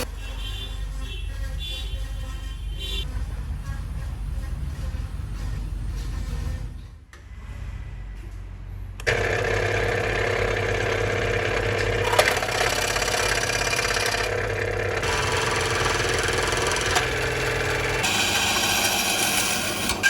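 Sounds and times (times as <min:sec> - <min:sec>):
small electric motor running: 0:09.1 - 0:20.0.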